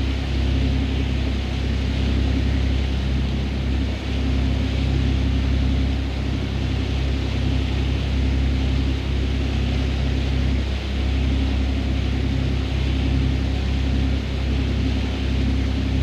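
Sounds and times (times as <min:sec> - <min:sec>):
boat engine droning: 0:00.0 - 0:16.0.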